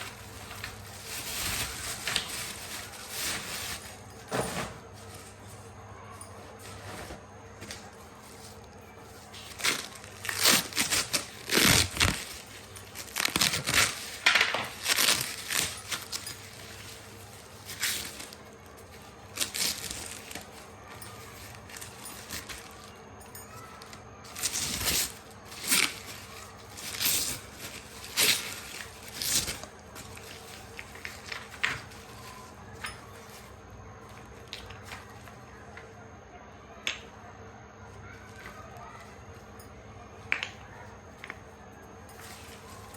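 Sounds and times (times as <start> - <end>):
packaging crinkling and tearing: 0.0 - 4.1, 8.2 - 35.4.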